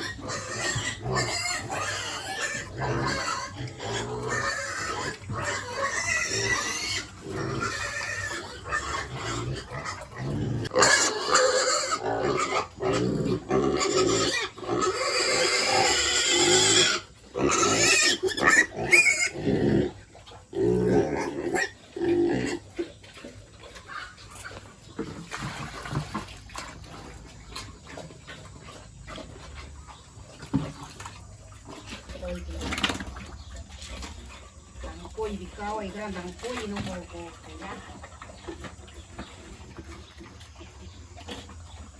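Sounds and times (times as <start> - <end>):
pigs squealing: 0.0 - 31.0.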